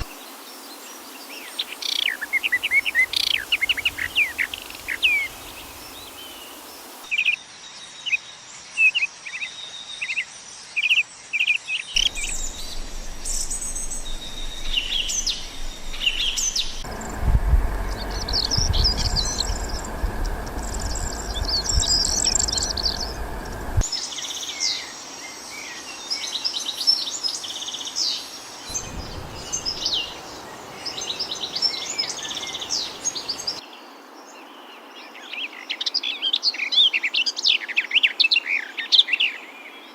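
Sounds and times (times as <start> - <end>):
songbirds chirping and singing: 0.0 - 7.0, 11.9 - 23.8
low rumble: 12.0 - 23.8, 28.7 - 30.6.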